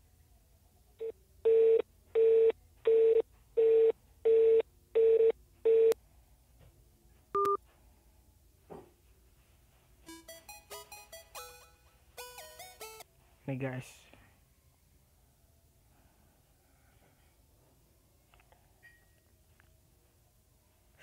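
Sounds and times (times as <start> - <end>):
phone beeps: 1.5 - 6.0, 7.4 - 7.6.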